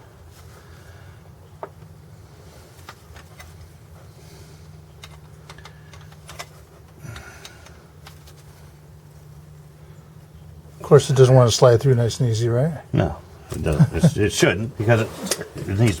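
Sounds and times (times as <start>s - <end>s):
steady low hum: 0.0s - 16.0s
small metallic clicks and taps: 5.0s - 8.4s.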